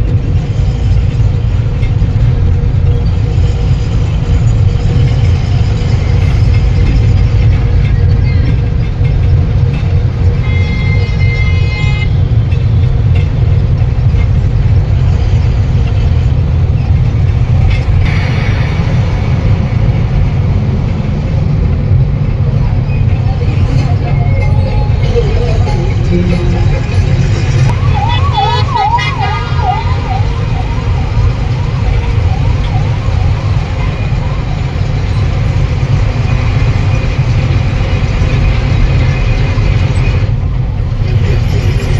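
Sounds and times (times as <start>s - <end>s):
truck engine and road rumble: 0.0s - 41.9s
high tone with overtones: 18.1s - 34.9s
emergency siren wailing: 22.8s - 36.3s.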